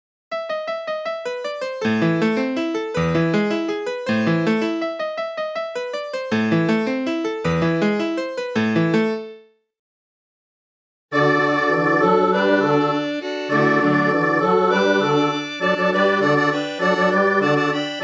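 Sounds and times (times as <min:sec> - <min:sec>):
electric piano ringtone melody: 0:00.3 - 0:09.6.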